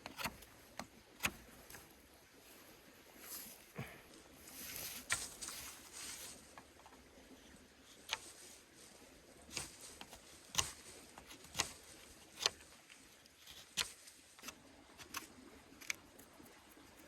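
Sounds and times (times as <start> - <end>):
dry twigs cracking: 9.5 - 15.2.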